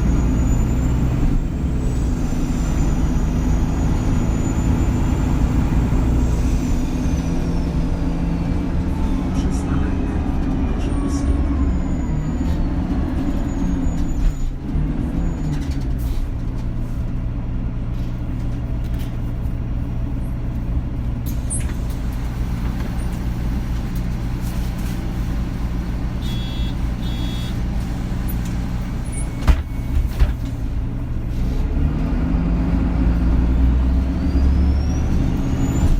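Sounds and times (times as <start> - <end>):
bus engine and road rumble: 0.0 - 35.9
short high beeps: 26.3 - 27.5.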